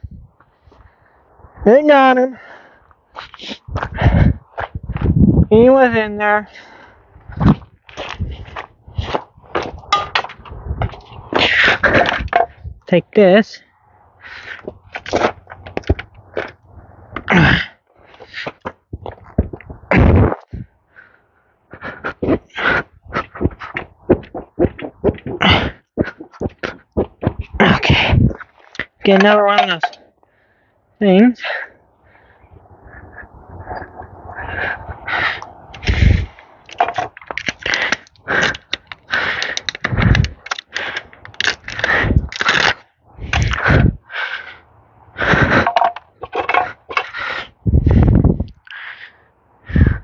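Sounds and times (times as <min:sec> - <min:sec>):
hand tools knocking and clattering: 0:09.9 - 0:10.4, 0:11.9 - 0:12.5, 0:29.1 - 0:30.0, 0:36.7 - 0:40.6, 0:45.6 - 0:47.1
rustling and scraping handling: 0:35.8 - 0:43.5, 0:45.6 - 0:47.2.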